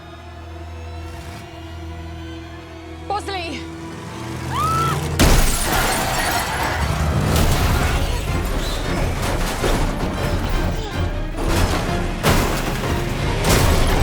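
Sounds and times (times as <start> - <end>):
driving film score: 0.0 - 14.0
crashing and shattering: 4.2 - 14.0.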